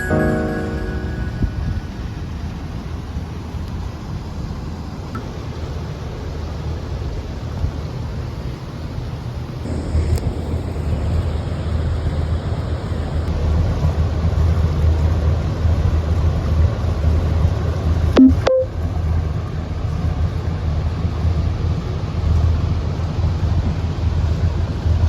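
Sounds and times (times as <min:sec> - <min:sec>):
brief tonal blip: 0:18.2 - 0:18.7.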